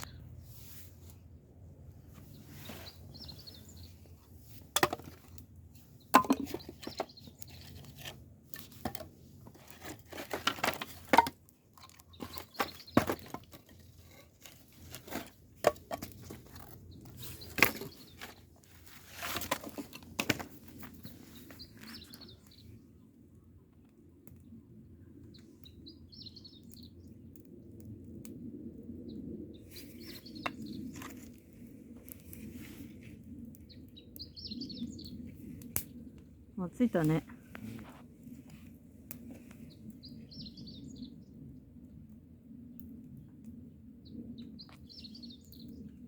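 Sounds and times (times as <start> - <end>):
bird chirps: 2.3 - 4.0, 33.7 - 35.2
rustling: 12.1 - 22.0.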